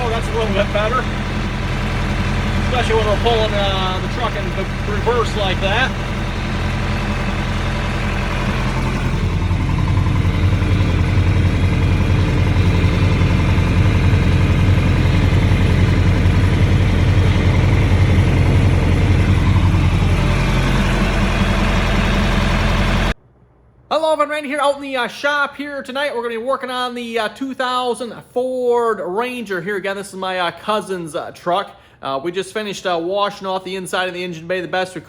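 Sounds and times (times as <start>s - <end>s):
tractor engine running under load: 0.0s - 23.2s.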